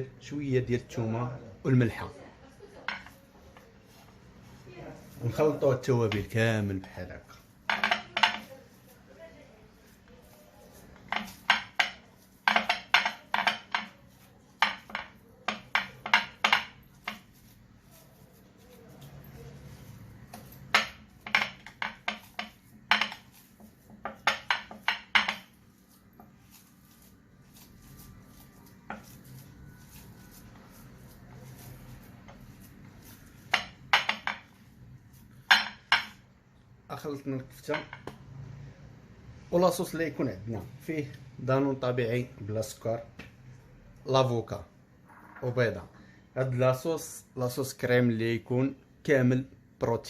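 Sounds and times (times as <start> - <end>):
utensil clinking on mixing bowl: 11.0 - 34.7.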